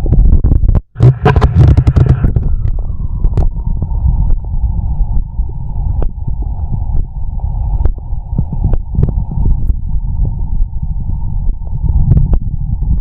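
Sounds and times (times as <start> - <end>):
stomach growling: 0.0 - 4.4.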